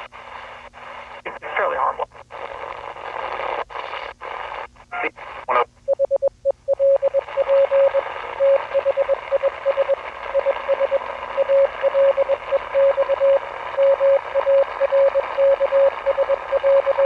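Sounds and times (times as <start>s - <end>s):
radio static hissing: 0.0s - 5.7s, 7.2s - 17.0s
morse code beeping: 5.9s - 17.0s.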